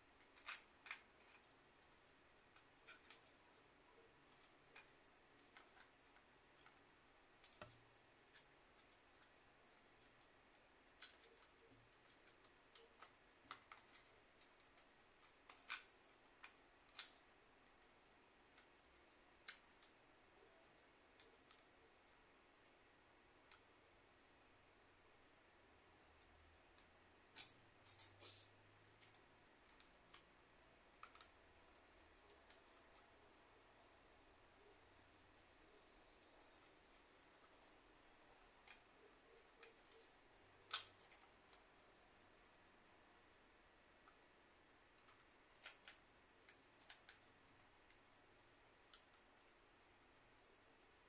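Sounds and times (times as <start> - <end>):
plastic parts clicking: 4.2 - 20.0, 26.8 - 33.1
plastic parts and tools clicking: 26.8 - 33.1.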